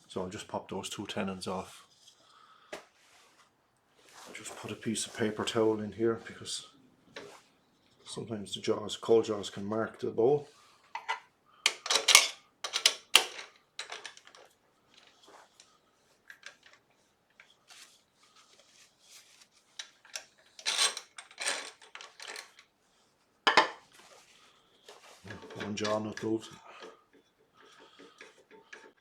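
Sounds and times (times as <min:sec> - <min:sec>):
paper towel rustling: 0:03.0 - 0:06.5.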